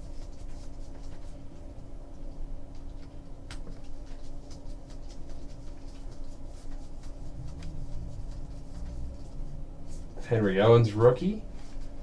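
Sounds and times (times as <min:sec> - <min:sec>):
low room hum: 0:00.0 - 0:12.0
trading cards sliding and ticking: 0:02.8 - 0:10.2.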